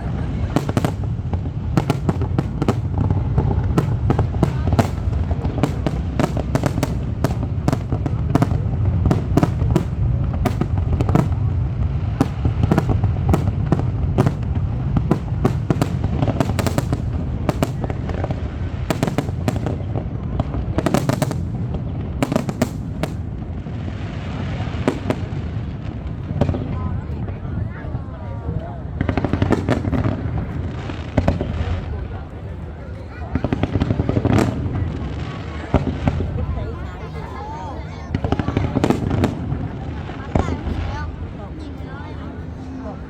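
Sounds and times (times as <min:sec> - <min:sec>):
fireworks cracking and popping: 0:00.0 - 0:26.8, 0:29.0 - 0:32.2, 0:38.1 - 0:41.2
continuous low rumble: 0:00.0 - 0:43.0.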